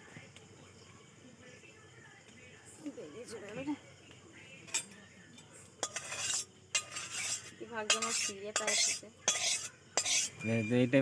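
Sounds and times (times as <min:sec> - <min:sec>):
utensil scraping a pan: 0:05.8 - 0:10.7.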